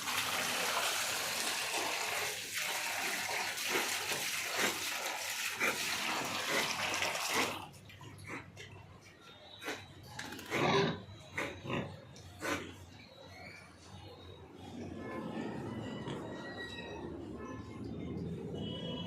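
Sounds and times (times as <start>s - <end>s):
water running: 0.0s - 7.9s.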